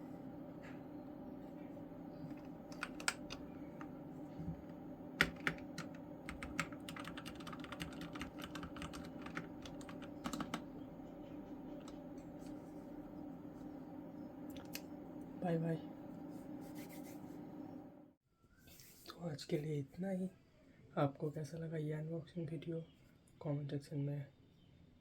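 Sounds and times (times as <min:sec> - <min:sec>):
steady low hum: 0:00.0 - 0:18.2
keyboard keys clicking: 0:02.3 - 0:03.9, 0:05.2 - 0:10.7.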